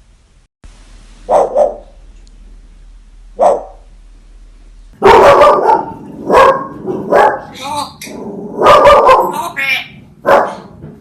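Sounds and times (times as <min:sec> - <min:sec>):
parrot imitating dog bark: 0:05.0 - 0:10.6.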